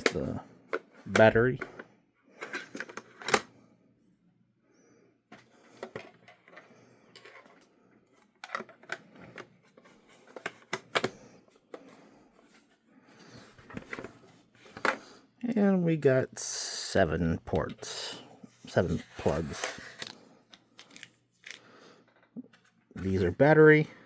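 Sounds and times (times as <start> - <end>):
clicks and knocks of handling: 0.0 - 3.5, 5.3 - 12.0
packaging rustling: 19.2 - 21.7.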